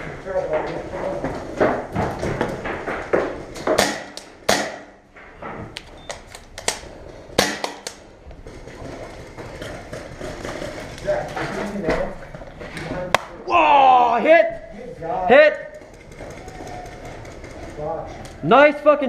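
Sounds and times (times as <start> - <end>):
paintball guns firing: 3.7 - 5.0, 7.4 - 8.1.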